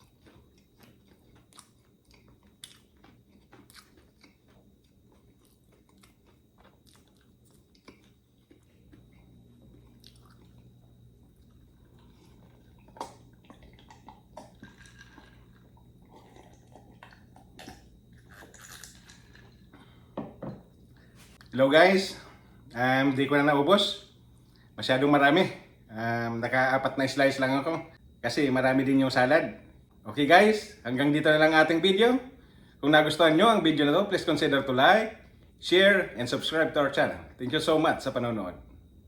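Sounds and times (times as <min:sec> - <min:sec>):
person chewing food: 0:00.0 - 0:20.2.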